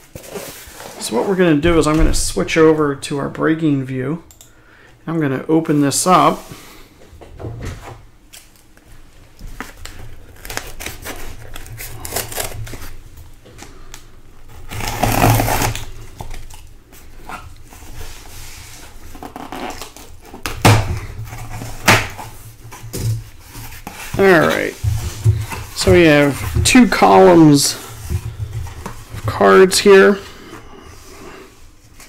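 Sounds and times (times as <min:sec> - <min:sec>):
cardboard scraping: 0:00.0 - 0:02.2, 0:14.5 - 0:16.5, 0:17.1 - 0:32.0
cardboard rustling: 0:00.0 - 0:02.5, 0:14.5 - 0:32.0.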